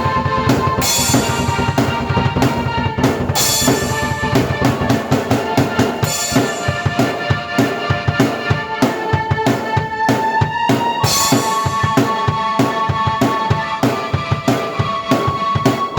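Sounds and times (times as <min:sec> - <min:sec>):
drum kit beat: 0:00.0 - 0:15.9
keyboard chords: 0:00.0 - 0:15.9
cymbal crash: 0:00.8 - 0:07.2.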